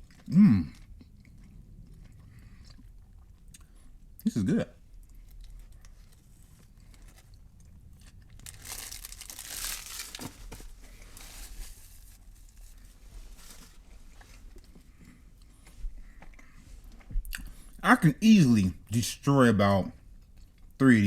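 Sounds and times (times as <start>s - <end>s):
chewing: 0.0s - 4.2s, 4.8s - 8.6s, 13.5s - 17.8s, 20.0s - 20.8s
wrapper crinkling: 8.0s - 14.3s.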